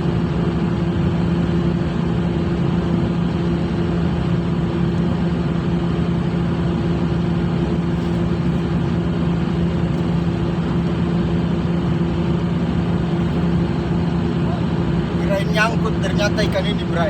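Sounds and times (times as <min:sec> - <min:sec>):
ship machinery humming: 0:05.5 - 0:17.0.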